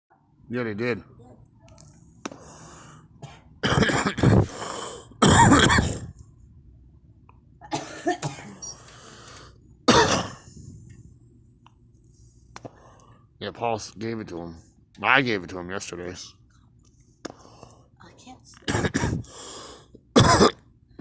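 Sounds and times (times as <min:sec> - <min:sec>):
girl coughing: 0:03.2 - 0:04.5, 0:05.2 - 0:06.2, 0:07.6 - 0:08.7, 0:09.9 - 0:10.5, 0:18.7 - 0:19.3, 0:20.2 - 0:20.6.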